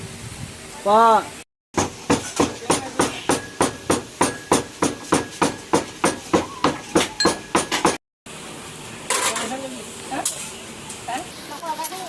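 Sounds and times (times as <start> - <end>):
rapid knocks of chopping: 1.8 - 8.0.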